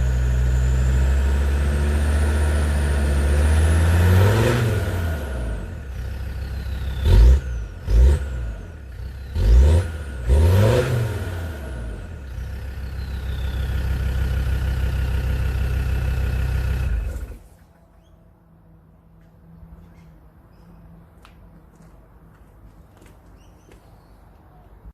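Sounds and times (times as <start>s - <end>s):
diesel engine idling and revving: 0.0s - 17.6s.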